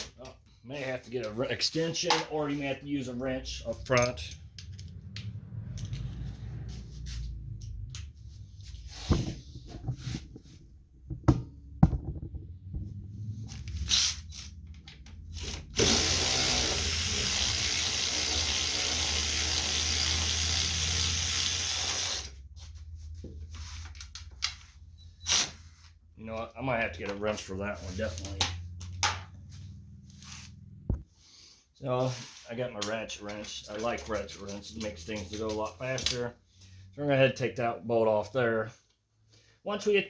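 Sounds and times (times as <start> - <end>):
cordless drill spinning: 15.4 - 22.3.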